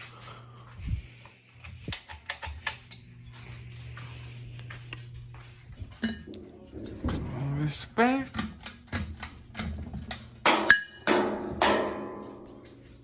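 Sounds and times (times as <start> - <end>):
ceiling fan humming: 0.0 - 13.0.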